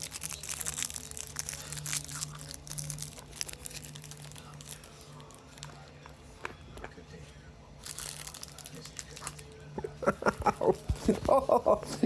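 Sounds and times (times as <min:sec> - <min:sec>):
crinkling crunching rustle: 0:07.8 - 0:09.6.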